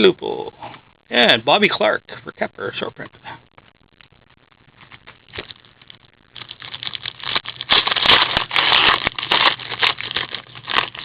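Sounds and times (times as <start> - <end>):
wrapper crinkling: 3.9 - 11.0.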